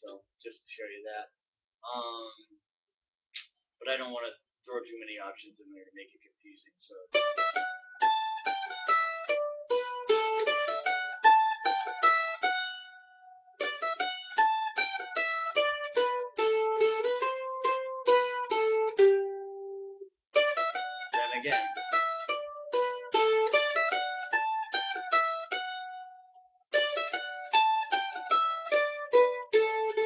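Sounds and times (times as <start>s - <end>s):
mandolin playing fiddle tune: 7.0s - 30.0s.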